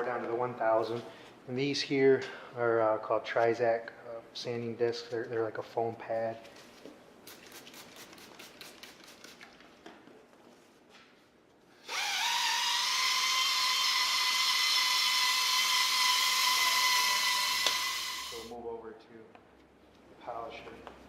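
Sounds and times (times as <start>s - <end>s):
power drill whining: 11.8s - 18.5s.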